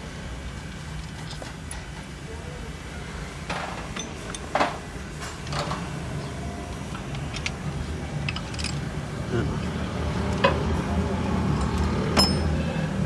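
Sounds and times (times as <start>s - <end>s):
steady low hum: 5.8s - 13.0s
hand tools clinking on metal: 6.9s - 13.0s.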